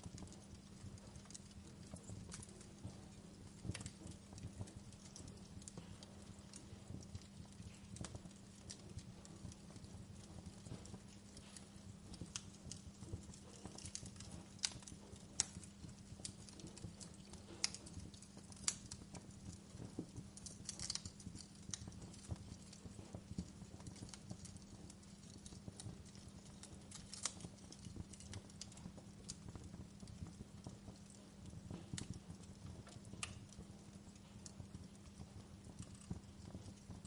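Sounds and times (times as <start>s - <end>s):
wood fire crackling: 0.0s - 37.0s.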